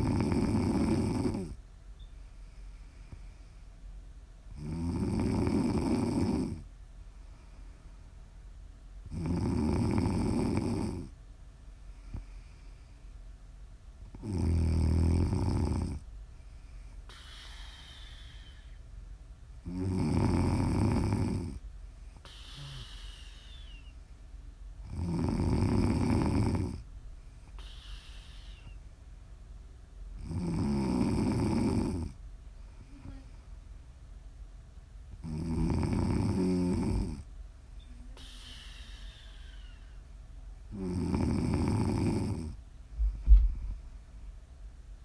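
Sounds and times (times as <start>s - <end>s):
woman snoring: 0.0s - 1.6s, 4.6s - 6.7s, 9.1s - 11.1s, 14.2s - 16.0s, 17.1s - 18.8s, 19.7s - 21.6s, 22.3s - 23.9s, 24.9s - 26.8s, 30.2s - 32.2s, 35.2s - 37.2s, 37.8s - 39.9s, 40.7s - 42.6s.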